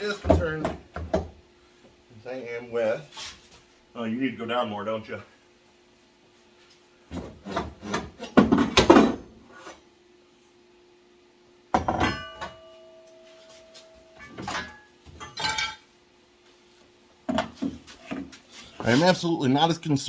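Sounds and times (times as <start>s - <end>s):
ringing metal clang: 11.8s - 15.8s.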